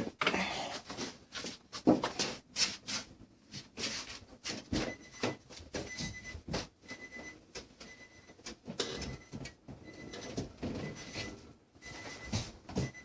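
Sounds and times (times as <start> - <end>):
warning chime beeping: 8.9 - 13.0.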